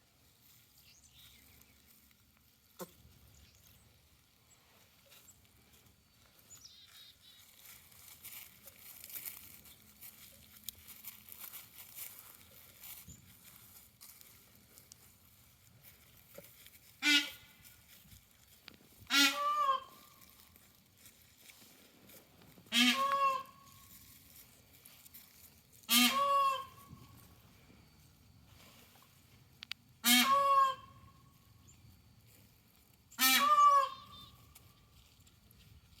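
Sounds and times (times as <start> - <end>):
bird honking: 17.0 - 17.5, 19.1 - 20.2, 22.7 - 23.8, 25.9 - 26.9, 30.0 - 31.0, 33.2 - 34.4.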